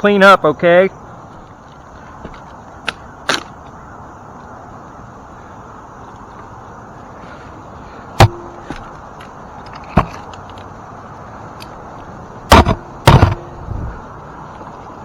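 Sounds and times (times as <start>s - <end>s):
hollow ring from trunk: 8.2s - 8.9s, 12.5s - 13.5s
climbing spurs knocking into trunk: 12.5s - 13.4s.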